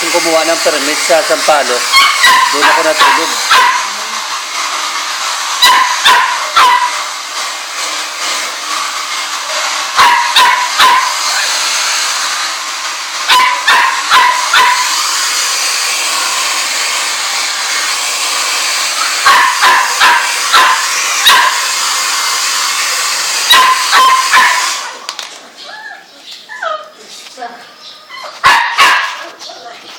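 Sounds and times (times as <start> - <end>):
small dog yapping: 1.9 - 3.9, 5.6 - 7.0, 10.0 - 11.6, 13.3 - 15.0, 19.2 - 21.6, 23.5 - 25.0, 25.7 - 27.0, 28.1 - 29.7.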